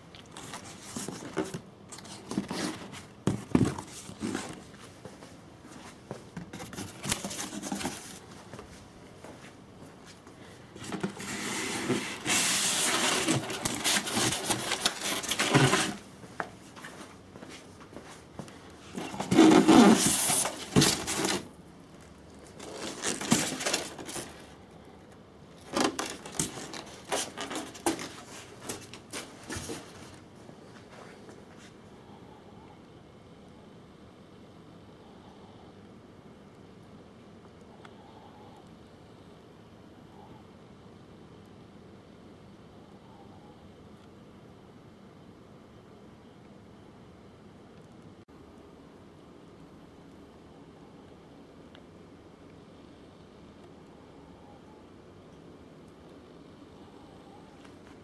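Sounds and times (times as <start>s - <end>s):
scraping rustle: 10.8s - 17.1s, 18.8s - 21.5s
handling scrapes and knocks: 10.8s - 21.5s.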